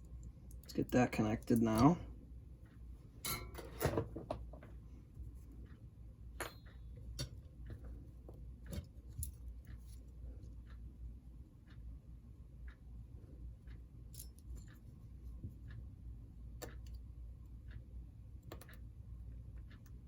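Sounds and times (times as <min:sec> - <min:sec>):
steady low hum: 0:00.0 - 0:20.0
small clicks and taps: 0:16.6 - 0:17.1, 0:18.4 - 0:20.0.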